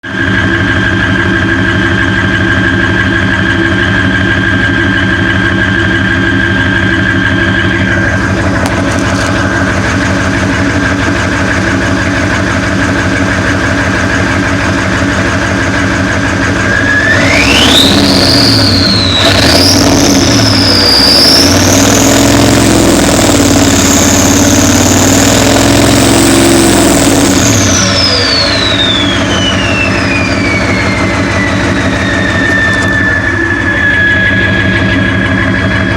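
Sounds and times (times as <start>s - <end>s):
diesel engine idling and revving: 0.0s - 35.9s
turbo whistle: 12.6s - 35.9s.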